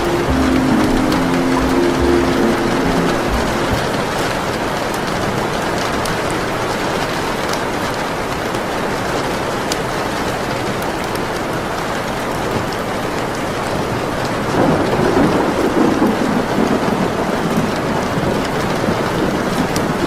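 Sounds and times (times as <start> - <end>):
thunder rumbling: 0.0 - 4.6, 14.6 - 20.0
heavy rain: 0.0 - 20.0.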